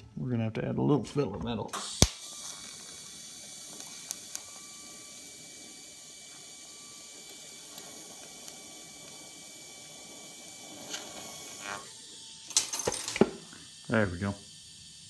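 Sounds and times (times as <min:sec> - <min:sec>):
sharp click: 0:01.8 - 0:02.2
welding crackle: 0:01.8 - 0:14.3.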